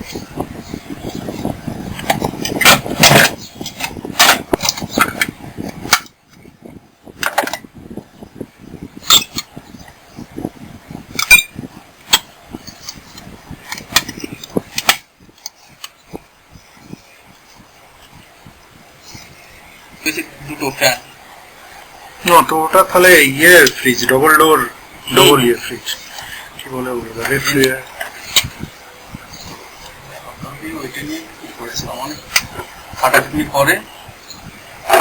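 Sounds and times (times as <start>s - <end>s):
rustling handling noise: 20.6s - 35.0s.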